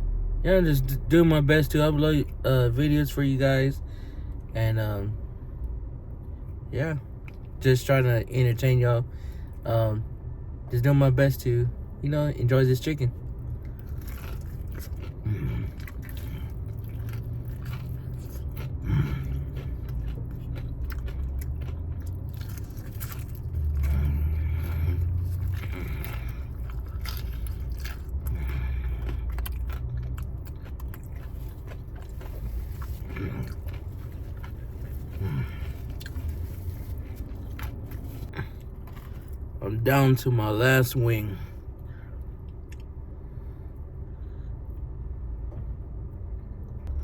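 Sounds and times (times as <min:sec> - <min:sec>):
low rumble: 0:13.1 - 0:40.4
person chewing crunchy chicken: 0:13.3 - 0:39.5.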